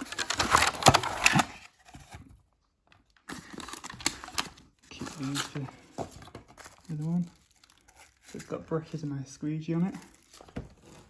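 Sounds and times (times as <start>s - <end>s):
plastic packaging crinkling: 3.3s - 9.1s, 9.7s - 11.0s.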